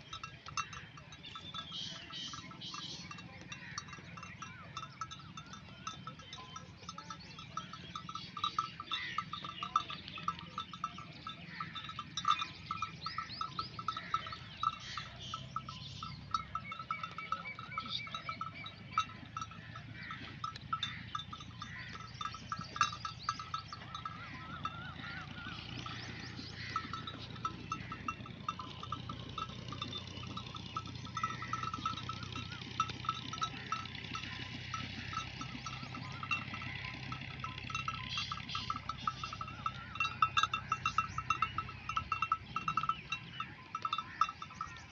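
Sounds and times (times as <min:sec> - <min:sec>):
sheep bells jingling: 0:00.0 - 0:44.9.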